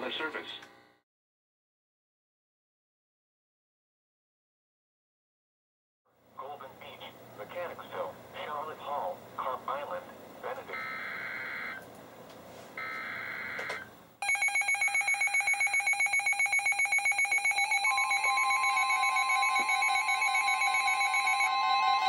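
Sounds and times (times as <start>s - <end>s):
steady warning alarm tone: 10.7s - 11.8s, 12.8s - 22.0s
rapid alarm beeping: 12.8s - 22.0s.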